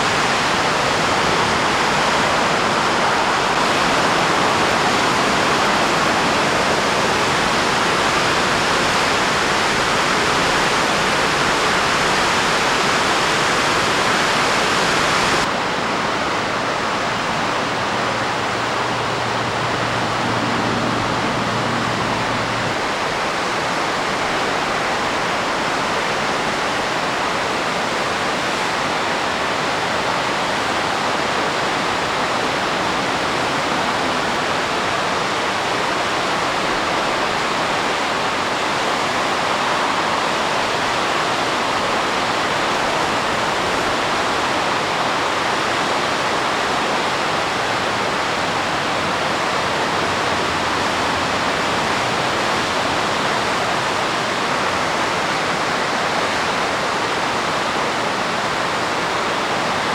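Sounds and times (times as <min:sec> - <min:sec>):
whitewater roaring: 0:00.0 - 0:59.9.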